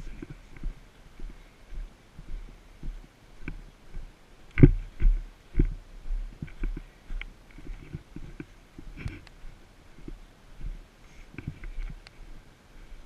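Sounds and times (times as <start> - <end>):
footsteps thudding: 4.6 - 6.8.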